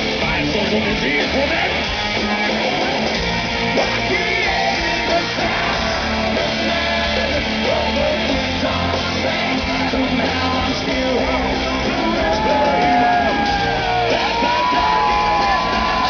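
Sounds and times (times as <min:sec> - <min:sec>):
bass guitar: 0:00.0 - 0:16.0
distorted electric guitars: 0:00.0 - 0:16.0
drums: 0:00.0 - 0:16.0
person singing: 0:03.7 - 0:16.0.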